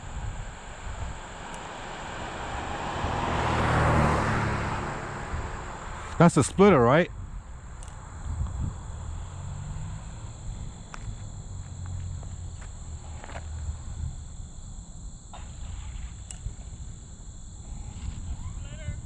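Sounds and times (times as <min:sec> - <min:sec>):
low rumble: 0:05.1 - 0:19.0.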